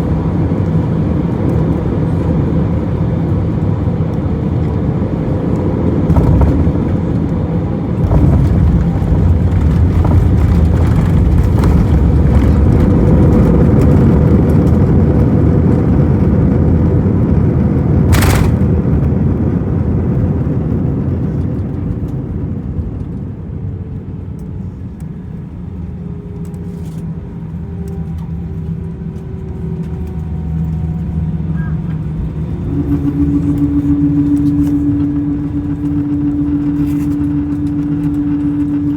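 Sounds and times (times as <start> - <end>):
jet engines and rushing air: 0.0 - 38.9
steady hum: 18.1 - 19.0, 27.6 - 38.9.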